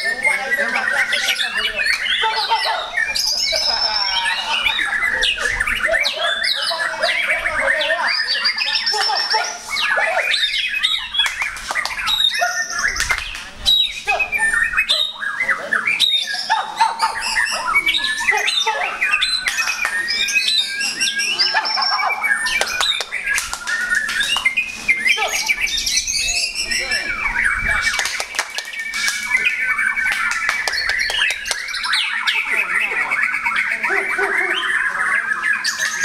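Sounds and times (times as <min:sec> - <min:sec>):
birds singing whistles and trills: 0:00.0 - 0:36.0
harsh squawking: 0:13.9 - 0:28.3.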